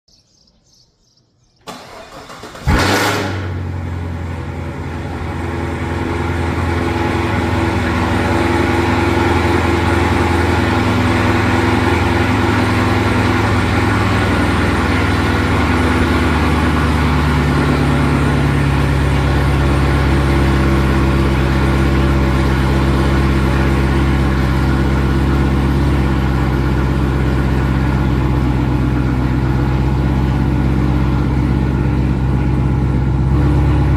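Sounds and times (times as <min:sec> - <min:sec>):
car engine starting and idling: 0:01.6 - 0:33.9.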